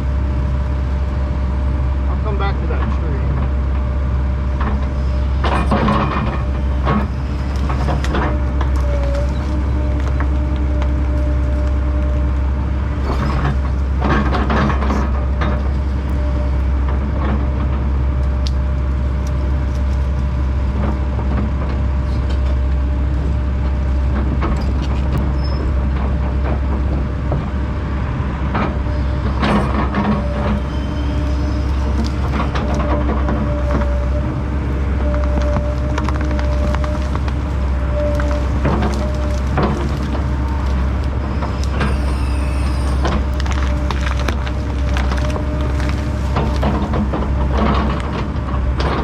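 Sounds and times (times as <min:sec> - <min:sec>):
heavy diesel machinery rumbling: 0:00.0 - 0:49.0
sharp crackling: 0:35.0 - 0:48.1.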